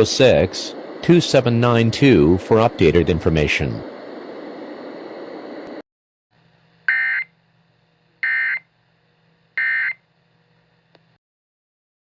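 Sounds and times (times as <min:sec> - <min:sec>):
steady hiss: 0:00.0 - 0:05.8.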